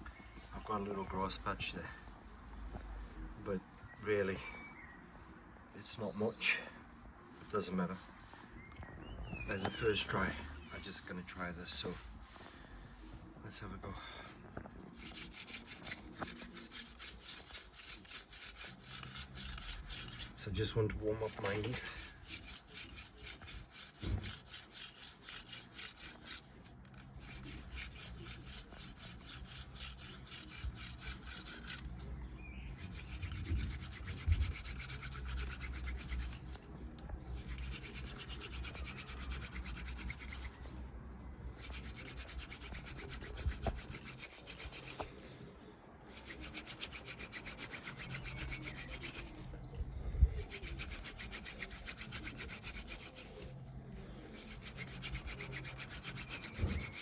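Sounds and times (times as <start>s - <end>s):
wooden spindle rubbing on hearth board: 14.5s - 36.6s, 37.4s - 40.8s, 41.5s - 57.0s.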